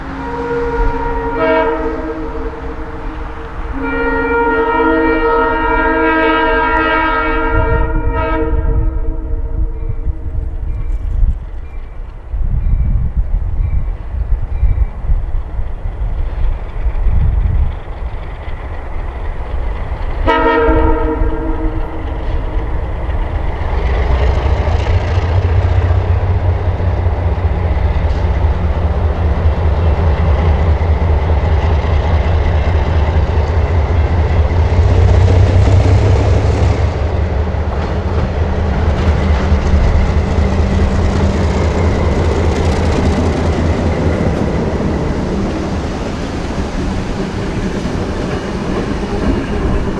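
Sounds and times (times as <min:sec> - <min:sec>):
locomotive horn blast: 0:00.0 - 0:10.3, 0:20.2 - 0:22.7.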